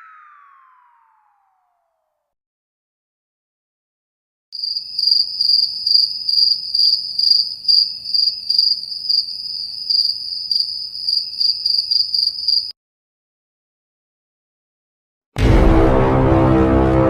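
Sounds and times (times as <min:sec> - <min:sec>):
crickets chirping: 0:04.6 - 0:12.7.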